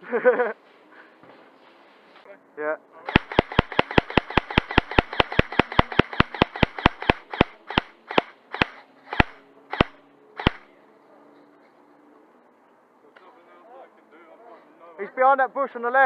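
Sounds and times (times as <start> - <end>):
airsoft rifle shots cracking: 3.1 - 10.7.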